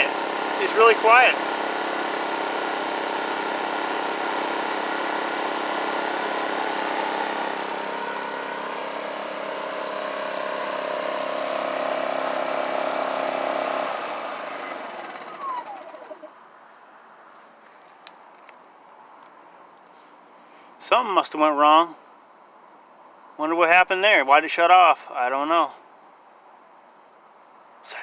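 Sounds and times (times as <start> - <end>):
generator winding down: 0.0 - 16.3
generator engine running: 0.0 - 16.4.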